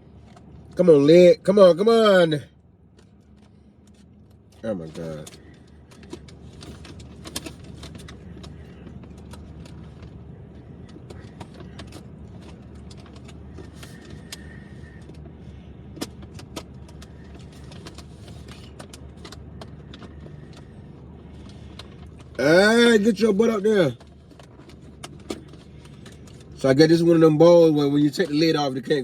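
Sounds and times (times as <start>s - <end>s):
steady low hum: 0.0s - 29.0s.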